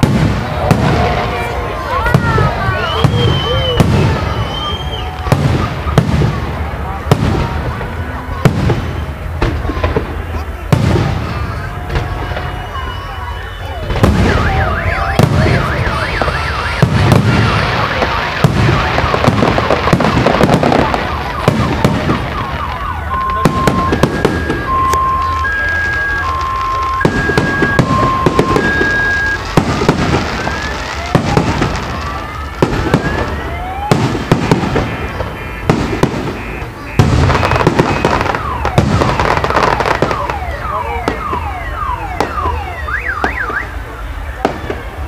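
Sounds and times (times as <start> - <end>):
rising firework whistles: 0.0 - 7.6, 8.3 - 45.0
fireworks bangs and crackling: 0.0 - 45.0
car alarm two-tone warble: 12.2 - 29.5, 32.8 - 43.8.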